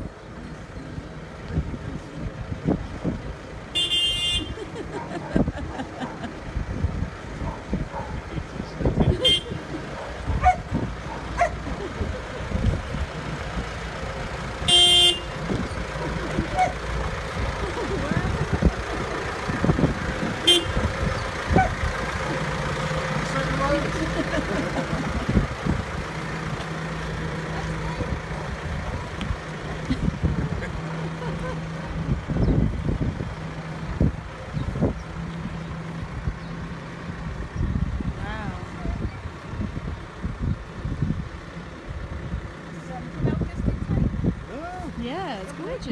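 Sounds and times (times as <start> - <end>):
tractor engine rumbling: 0.0 - 45.9
tractor horn beep: 3.7 - 4.8, 9.0 - 9.9, 14.4 - 25.4.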